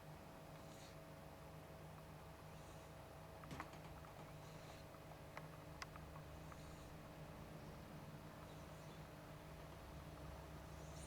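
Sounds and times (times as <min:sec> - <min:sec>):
pet snoring: 0:04.2 - 0:05.0, 0:10.7 - 0:11.0.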